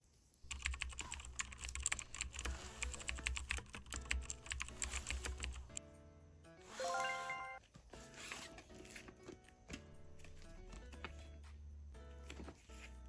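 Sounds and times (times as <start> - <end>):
rapid keyboard clicking: 0.5 - 5.8
soft background music: 0.6 - 13.0.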